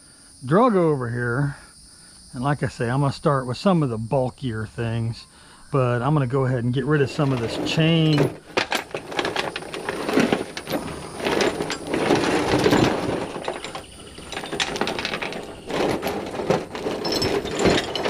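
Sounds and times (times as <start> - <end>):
metal chain rattling: 6.9 - 18.0.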